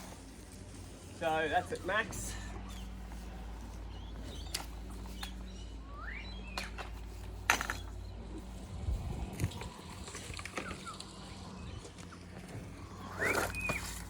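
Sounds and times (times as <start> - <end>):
steady low hum: 0.0 - 14.0
bird chirping: 3.7 - 8.6, 9.5 - 14.0.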